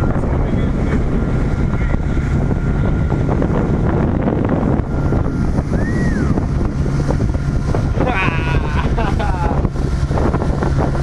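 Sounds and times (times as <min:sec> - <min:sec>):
small boat engine running: 0:00.0 - 0:11.0
wind buffeting microphone: 0:00.0 - 0:11.0.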